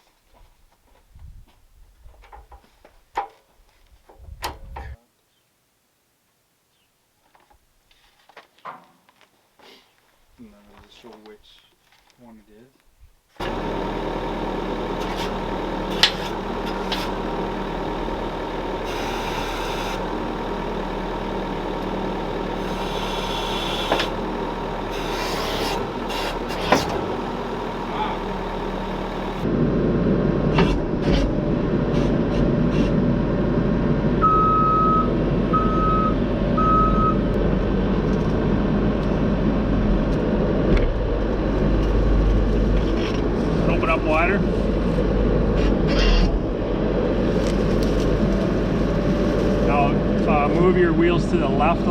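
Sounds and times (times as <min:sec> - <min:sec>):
skid steer engine running: 0:13.4 - 0:51.9
reversing alarm beeping: 0:34.2 - 0:37.3.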